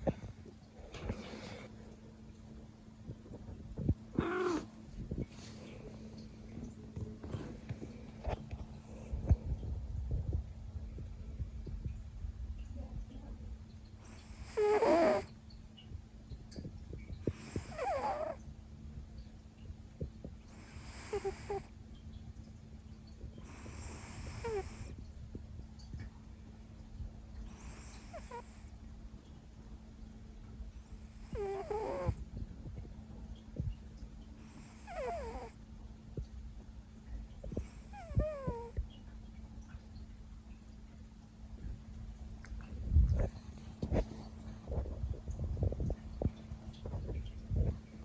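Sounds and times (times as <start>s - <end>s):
cat snoring: 4.2s - 4.8s, 14.0s - 15.3s, 17.2s - 18.4s, 20.5s - 21.7s, 23.4s - 25.0s, 27.5s - 28.7s, 30.9s - 32.2s, 34.4s - 35.6s, 37.5s - 38.8s.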